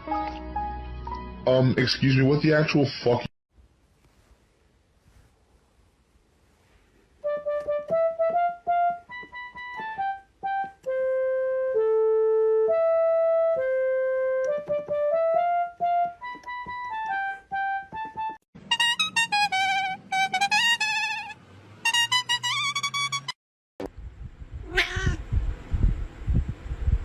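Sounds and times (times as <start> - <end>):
electronic keyboard melody: 0.0 - 1.5, 7.2 - 23.4.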